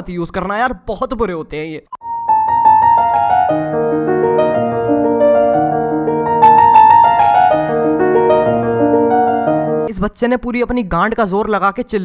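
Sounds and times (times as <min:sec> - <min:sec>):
piano music: 0:02.0 - 0:09.9.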